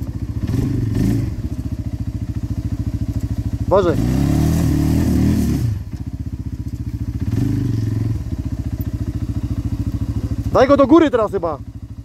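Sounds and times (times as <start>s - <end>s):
engine revving hard: 0.0s - 1.4s, 3.7s - 5.8s, 7.2s - 8.2s.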